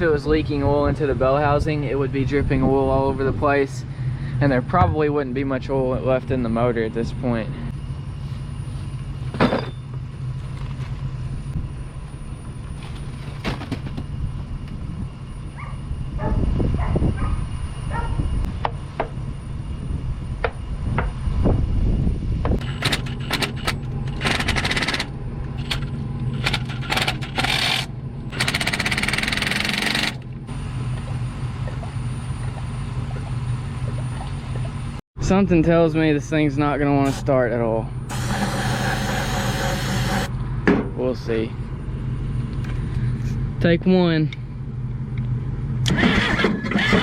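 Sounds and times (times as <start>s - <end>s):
steady low rumble: 0.0s - 13.4s, 14.0s - 22.7s, 23.6s - 27.1s, 27.8s - 28.4s, 40.1s - 45.9s.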